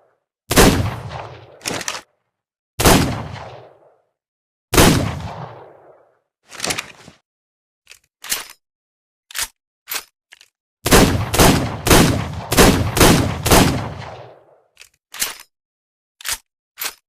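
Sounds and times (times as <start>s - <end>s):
gunshots echoing: 0.5s - 1.9s, 2.8s - 4.0s, 4.7s - 6.0s, 10.9s - 14.6s.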